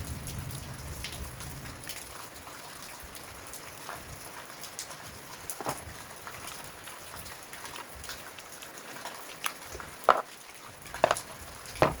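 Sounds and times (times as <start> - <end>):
sharp knocks: 11.0 - 11.2, 11.8 - 12.0
light taps and clicks: 11.0 - 12.0.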